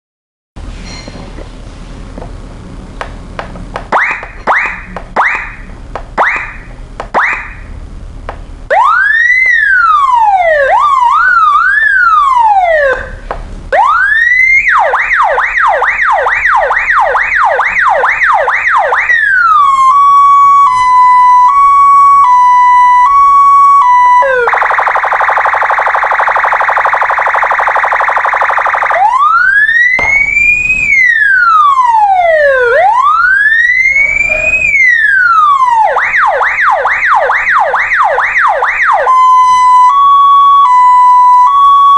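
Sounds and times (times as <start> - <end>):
police siren cycling tones: 3.9 - 7.7, 8.7 - 41.9
siren buzzing horn tone: 8.7 - 41.9.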